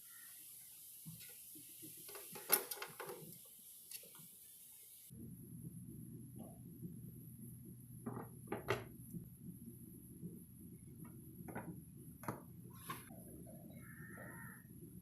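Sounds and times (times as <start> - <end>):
faint steady hum: 3.3 - 15.0.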